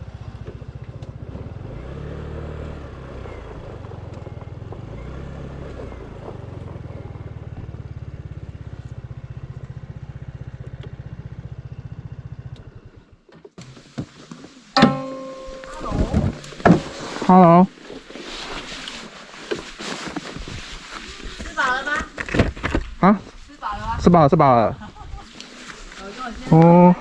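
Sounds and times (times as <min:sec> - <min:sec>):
motorcycle engine running: 0:00.0 - 0:13.8.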